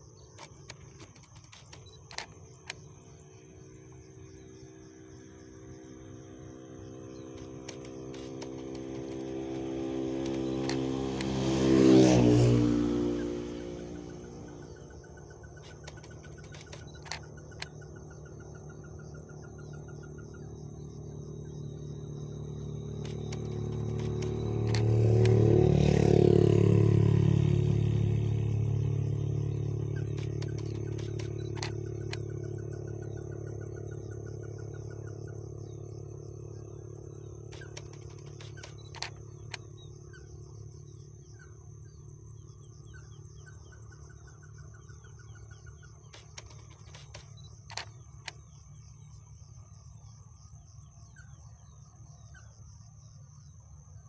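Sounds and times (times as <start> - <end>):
insect trill: 0.0 - 54.0
vehicle passing by: 3.0 - 40.9, 44.2 - 48.0.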